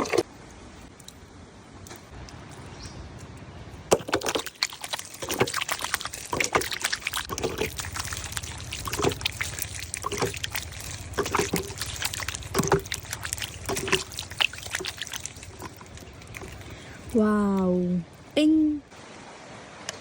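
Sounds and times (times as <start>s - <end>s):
water pouring and trickling: 0.0s - 1.3s, 1.9s - 19.0s
short splashes: 3.9s - 17.3s.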